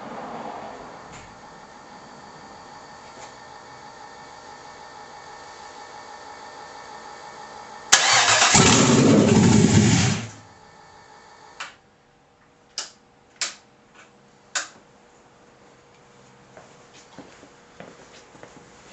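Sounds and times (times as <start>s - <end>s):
engine cranking and coughing: 8.0s - 10.4s.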